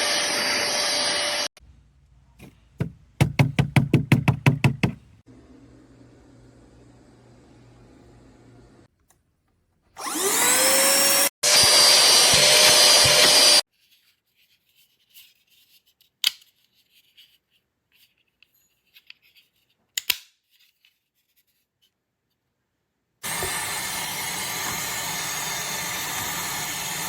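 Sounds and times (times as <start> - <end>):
handheld vacuum motor whining: 0.0 - 1.5, 10.0 - 13.6, 23.2 - 27.0.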